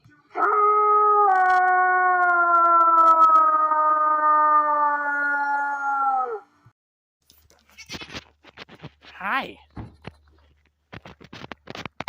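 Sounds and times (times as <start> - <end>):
dog howling: 0.3 - 6.5.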